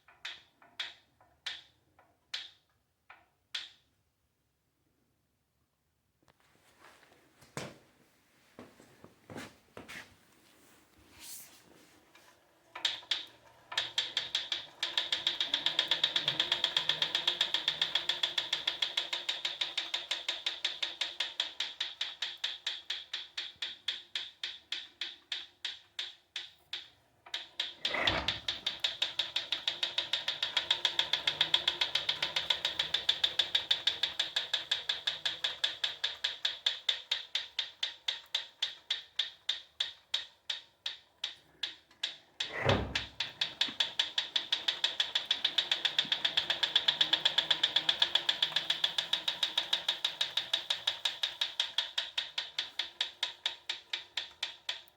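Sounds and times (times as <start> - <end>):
exercise bike ticking: 12.1 - 54.9.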